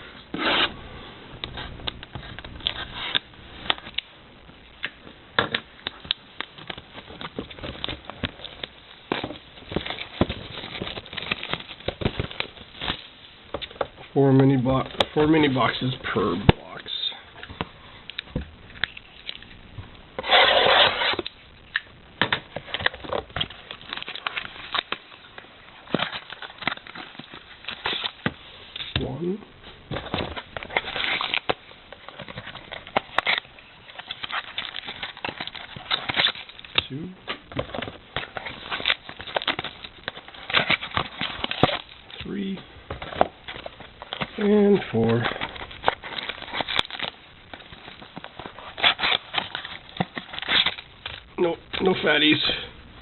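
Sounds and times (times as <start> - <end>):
cardboard rasp: 0.3 - 0.7, 20.2 - 21.2.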